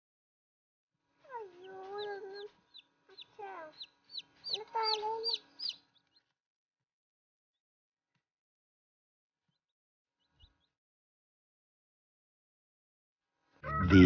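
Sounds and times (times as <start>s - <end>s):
chicks peeping: 1.3s - 6.3s.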